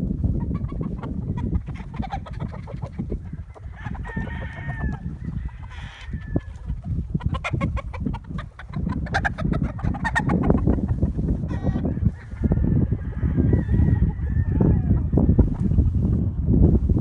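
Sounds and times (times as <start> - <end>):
chickens clucking: 0.1 - 16.4
rooster crowing: 3.5 - 6.6, 11.6 - 15.3.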